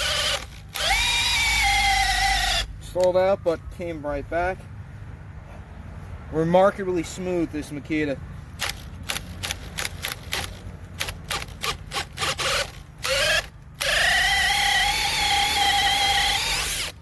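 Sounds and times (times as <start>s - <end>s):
drill motor whine: 0.0s - 2.7s, 12.2s - 17.0s
sharp irregular drill clicks: 0.0s - 3.2s, 8.6s - 17.0s.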